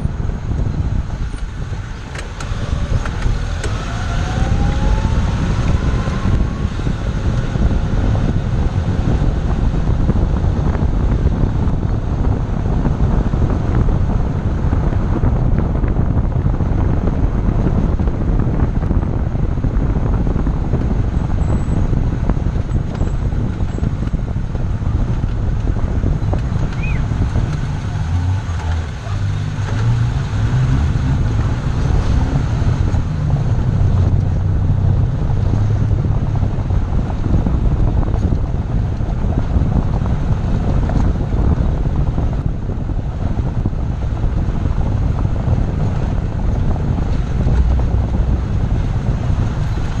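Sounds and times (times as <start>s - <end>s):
low engine hum: 0.0s - 50.0s
road and wind noise: 0.0s - 50.0s.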